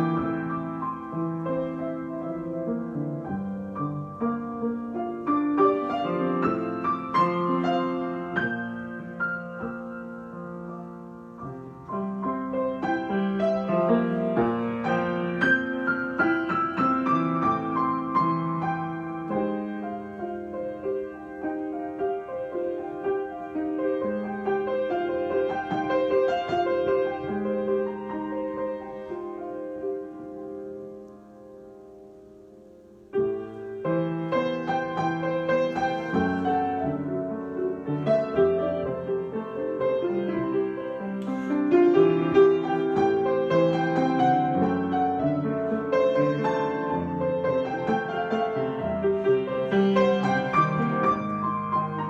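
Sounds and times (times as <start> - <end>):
solo piano improvisation: 0.0 - 52.0.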